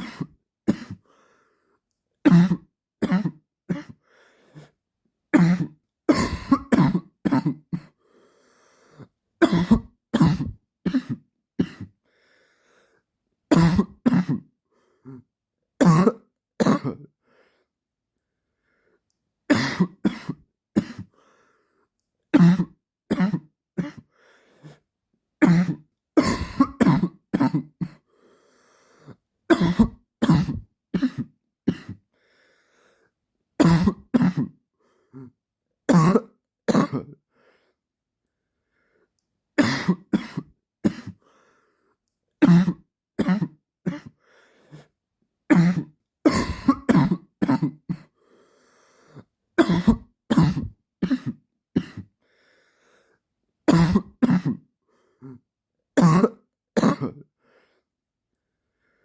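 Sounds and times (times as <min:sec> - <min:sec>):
man coughing: 0:05.4 - 0:08.0, 0:09.4 - 0:11.9, 0:19.5 - 0:21.1, 0:25.4 - 0:28.0, 0:29.5 - 0:32.0, 0:33.6 - 0:34.6, 0:39.6 - 0:41.2, 0:45.5 - 0:48.1, 0:49.6 - 0:52.1.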